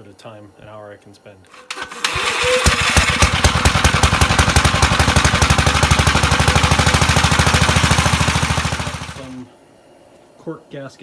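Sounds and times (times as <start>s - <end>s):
machine knocking rapidly: 1.6s - 9.4s.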